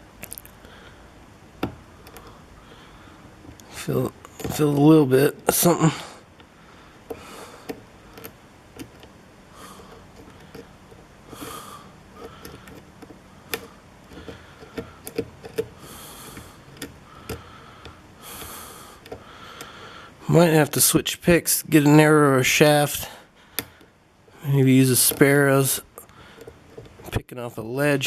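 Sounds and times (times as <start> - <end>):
lock pick metallic clicks: 7.1 - 9.1, 12.2 - 19.2.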